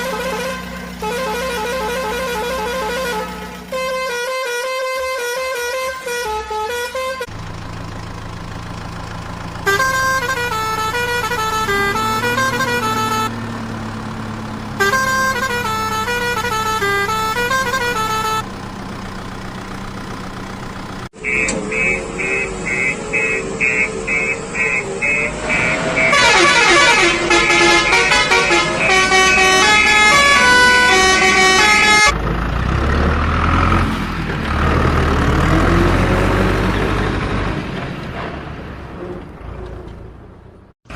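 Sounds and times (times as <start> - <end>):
rapid electronic beeping: 21.2 - 26.2
toy beeping melodies: 21.2 - 26.2.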